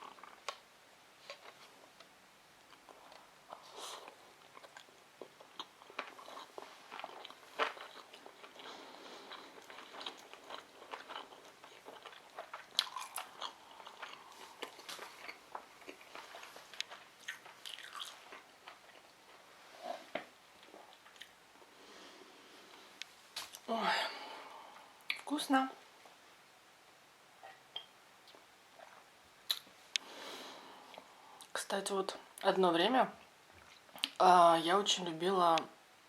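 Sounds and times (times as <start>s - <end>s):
person chewing: 2.7s - 21.4s.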